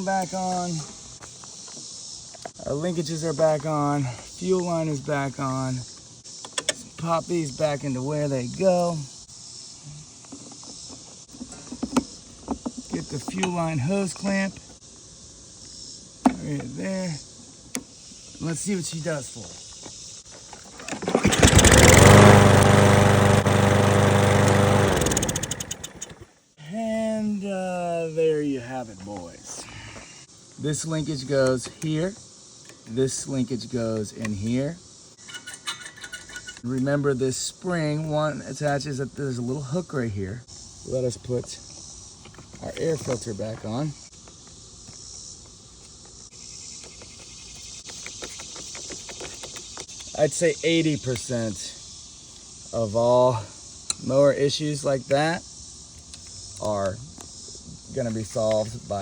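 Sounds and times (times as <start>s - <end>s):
insects chirring: 0.0s - 59.0s
lawn mower engine running: 20.8s - 26.3s.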